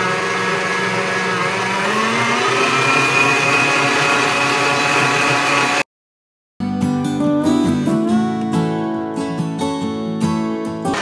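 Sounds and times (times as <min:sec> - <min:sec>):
electric mixer motor whining: 0:00.0 - 0:05.9.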